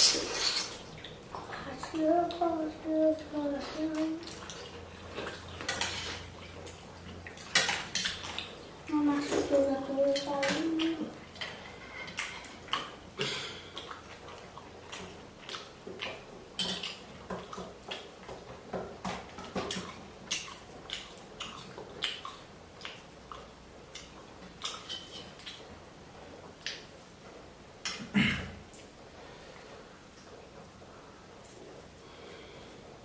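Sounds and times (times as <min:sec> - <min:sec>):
mouth sounds of eating: 0:00.0 - 0:06.5.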